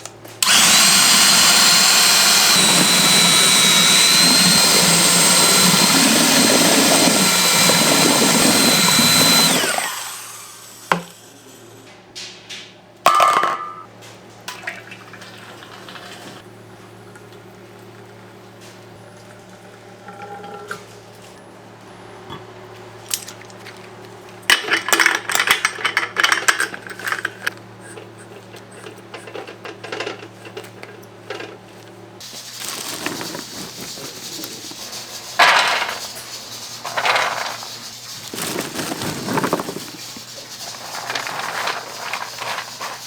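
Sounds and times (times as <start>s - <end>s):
metal utensils clinking on molds: 24.5s - 31.6s.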